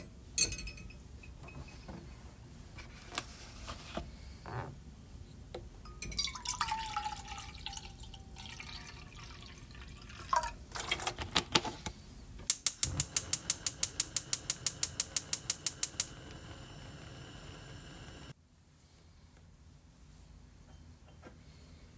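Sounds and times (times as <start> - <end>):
liquid pouring: 6.1 - 11.0
fast run of sharp clicks: 12.5 - 16.4.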